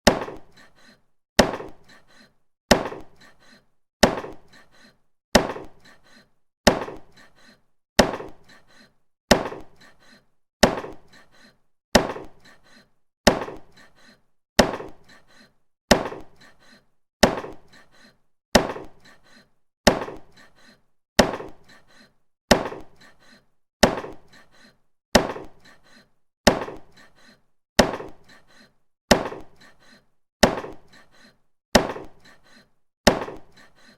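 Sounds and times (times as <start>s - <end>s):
meat cleaver chopping meat: 0.0s - 0.5s, 1.4s - 1.8s, 2.7s - 3.2s, 4.0s - 4.5s, 5.4s - 5.8s, 6.7s - 7.1s, 8.0s - 8.4s, 9.3s - 9.8s, 10.6s - 11.1s, 12.0s - 12.4s, 13.3s - 13.7s, 14.6s - 15.0s, 15.9s - 16.4s, 17.2s - 17.7s, 18.6s - 19.0s, 19.9s - 20.3s, 21.2s - 21.6s, 22.5s - 23.0s, 23.8s - 24.3s, 25.2s - 25.6s, 26.5s - 26.9s, 27.8s - 28.2s, 29.1s - 29.6s, 30.4s - 30.9s, 31.8s - 32.2s, 33.1s - 33.5s.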